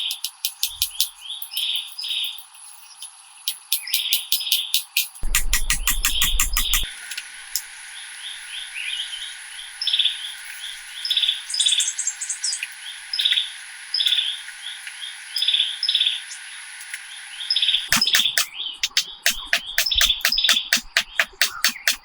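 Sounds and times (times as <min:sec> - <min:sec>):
small birds chirping: 0:00.0 - 0:06.9, 0:08.0 - 0:22.0
high bird trill: 0:17.5 - 0:22.0.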